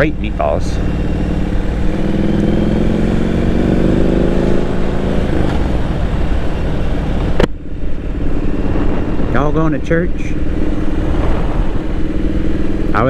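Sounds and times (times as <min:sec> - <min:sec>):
motorcycle engine accelerating: 0:00.0 - 0:13.0
wind noise: 0:04.6 - 0:13.0.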